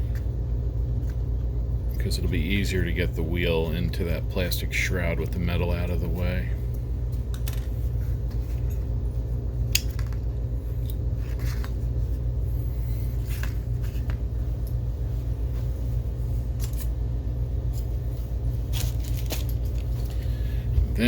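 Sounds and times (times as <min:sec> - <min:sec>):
steady low hum: 0:00.0 - 0:21.0
clicks and clinks of parts handled: 0:06.7 - 0:08.8, 0:18.7 - 0:20.2.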